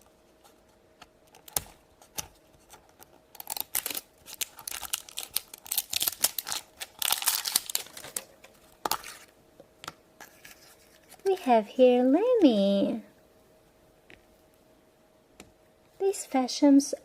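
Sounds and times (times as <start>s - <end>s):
plastic wrapper crinkling and tearing: 1.4s - 9.3s.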